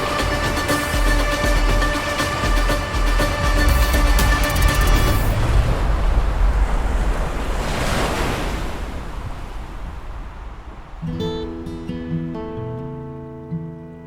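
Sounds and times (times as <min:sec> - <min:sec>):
acoustic guitar music: 0:00.0 - 0:05.4, 0:11.0 - 0:14.0
whitewater rapids rushing: 0:00.0 - 0:11.6.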